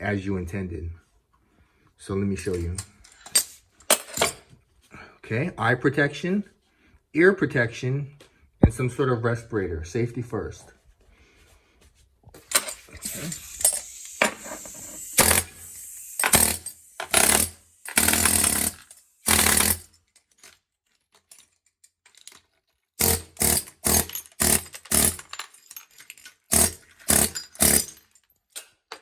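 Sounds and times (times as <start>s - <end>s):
air hammer chiseling tile: 13.0s - 19.9s, 23.0s - 25.3s, 26.5s - 28.0s.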